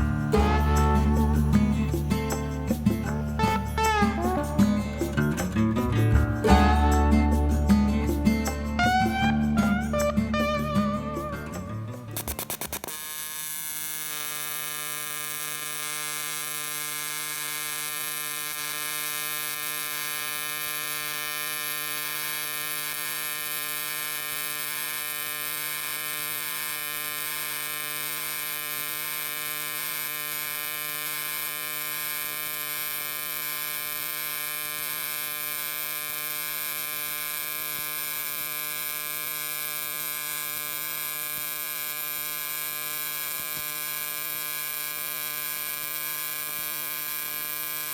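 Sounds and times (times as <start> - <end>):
welding arc buzzing: 0.0 - 47.9.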